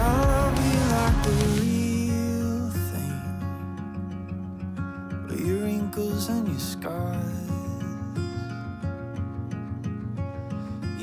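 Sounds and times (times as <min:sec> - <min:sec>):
sustained chords: 0:00.0 - 0:01.7
acoustic guitar: 0:00.0 - 0:11.0.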